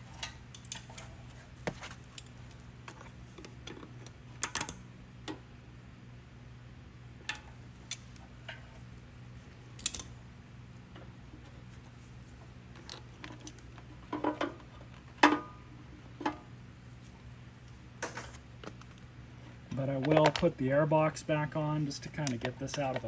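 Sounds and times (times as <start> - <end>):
engine parts and tools clicking: 0.0 - 5.4, 7.3 - 8.8, 9.7 - 10.2, 12.7 - 15.5, 22.0 - 23.0
steady low hum: 0.0 - 23.0.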